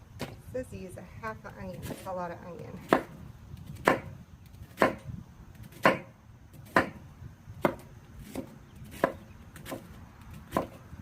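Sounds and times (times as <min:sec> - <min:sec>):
knife chopping onion: 0:02.8 - 0:05.0, 0:05.6 - 0:07.0, 0:07.6 - 0:09.9, 0:10.5 - 0:10.8.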